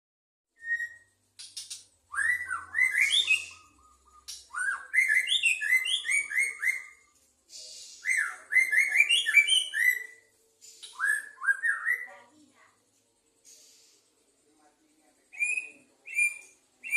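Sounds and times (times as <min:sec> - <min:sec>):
bird singing whistled notes: 0:00.5 - 0:12.3, 0:15.2 - 0:16.9.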